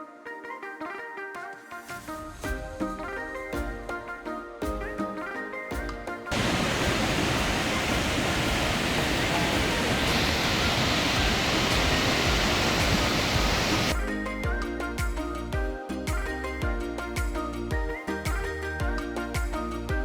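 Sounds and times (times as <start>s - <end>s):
background music: 0.0s - 20.0s
waterfall rushing: 6.3s - 13.9s.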